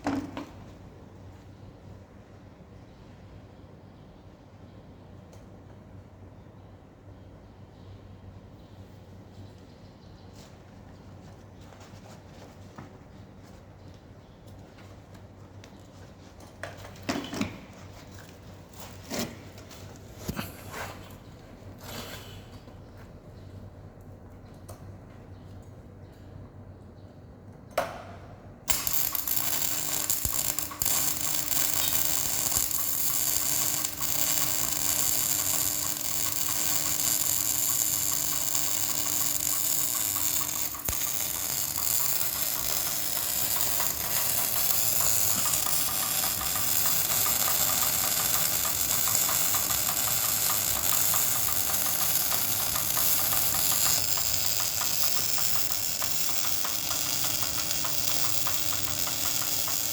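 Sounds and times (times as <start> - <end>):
arc welding hiss: 28.7 - 59.9
welder click: 28.7 - 59.9.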